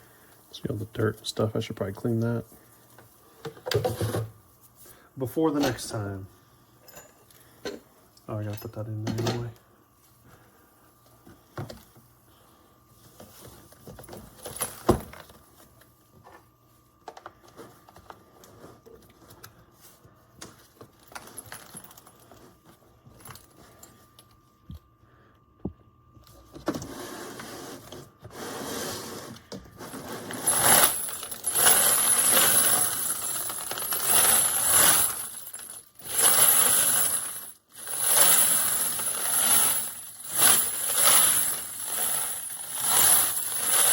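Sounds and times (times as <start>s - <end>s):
brass cartridge cases clinking: 30.4s - 43.9s.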